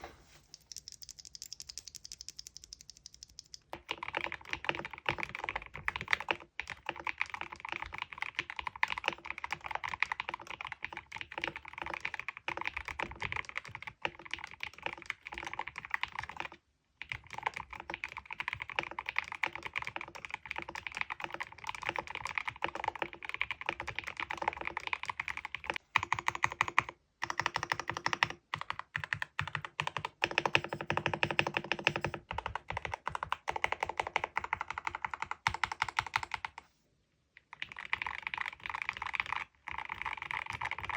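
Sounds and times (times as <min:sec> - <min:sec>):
mechanical keyboard typing: 0:00.5 - 0:36.6, 0:37.5 - 0:40.9.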